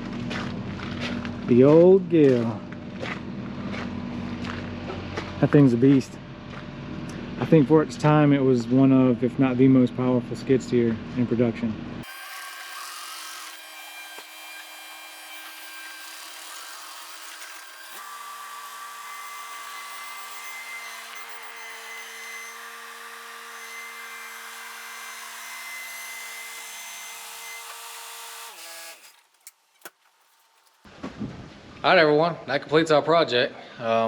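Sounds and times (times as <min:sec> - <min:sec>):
machine whine and hum: 0:00.0 - 0:12.2.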